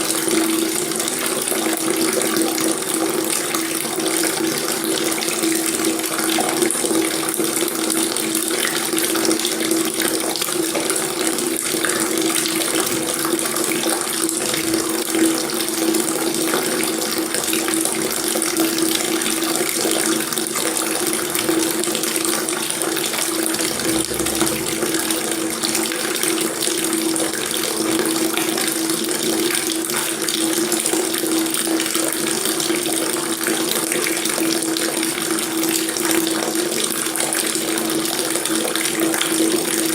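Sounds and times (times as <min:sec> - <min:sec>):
water tap running into sink: 0:00.0 - 0:26.0.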